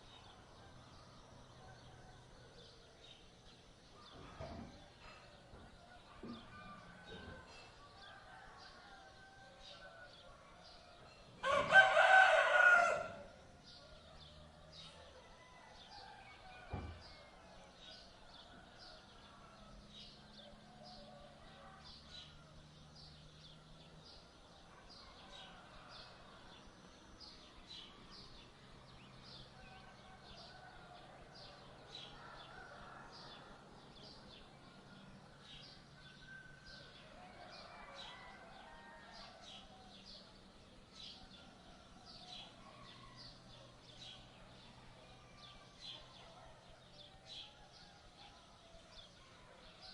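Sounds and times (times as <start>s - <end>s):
rooster crowing: 6.0s - 10.4s, 11.1s - 22.6s, 29.4s - 34.1s, 36.3s - 40.2s.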